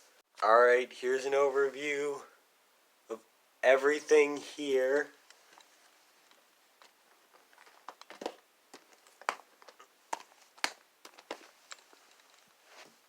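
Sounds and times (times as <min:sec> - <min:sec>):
crinkling: 0:04.9 - 0:13.0.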